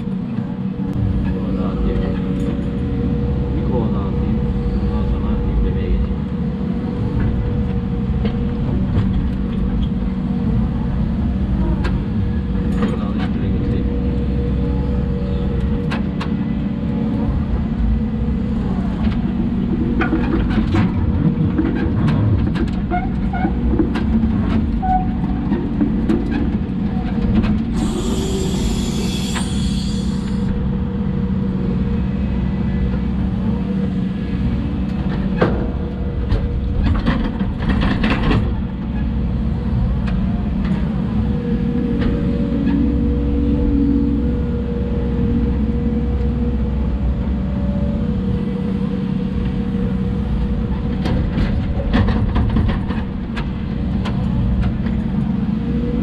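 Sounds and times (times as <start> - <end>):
excavator diesel engine running: 0.0 - 56.0
hiss: 27.8 - 30.5.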